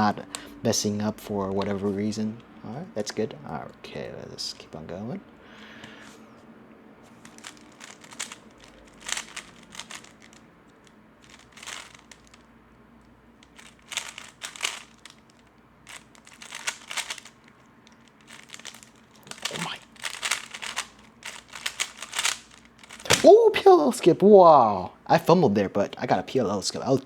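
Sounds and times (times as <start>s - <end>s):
puzzle cube plastic clicking: 7.2s - 12.5s, 13.4s - 23.3s.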